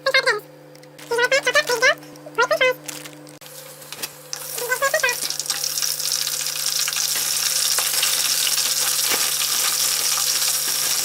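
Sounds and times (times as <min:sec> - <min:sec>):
food sizzling in hot oil: 0:03.4 - 0:11.0.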